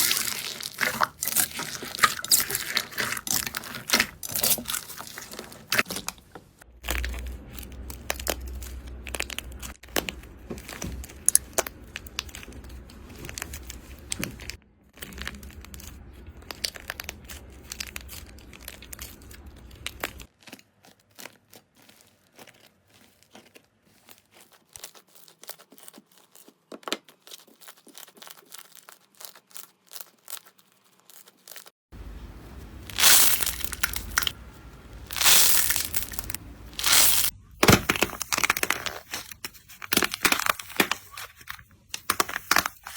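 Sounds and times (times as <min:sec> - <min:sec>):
slime crackling and popping: 0:00.0 - 0:06.2, 0:06.8 - 0:31.7, 0:32.7 - 0:34.4, 0:35.0 - 0:42.9
loud crunching: 0:00.0 - 0:14.1, 0:27.3 - 0:42.9.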